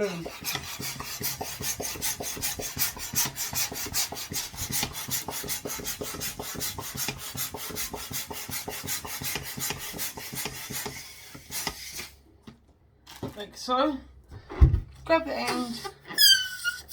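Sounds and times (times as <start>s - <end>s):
rasping rubbing on balloon: 0.0s - 12.2s, 15.6s - 16.9s.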